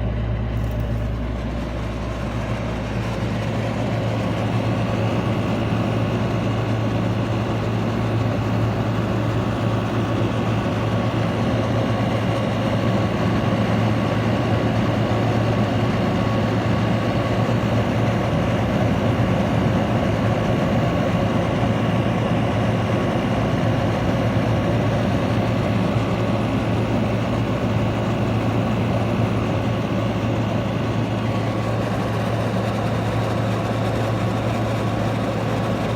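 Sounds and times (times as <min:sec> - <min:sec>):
air conditioner compressor humming: 0:00.0 - 0:35.9
fan air rushing: 0:00.0 - 0:35.9.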